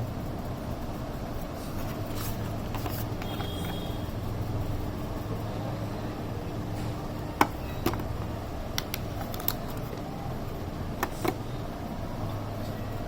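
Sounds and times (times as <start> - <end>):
low background hum: 0.0 - 13.0
box handling clicks and taps: 7.4 - 10.0, 11.0 - 11.4.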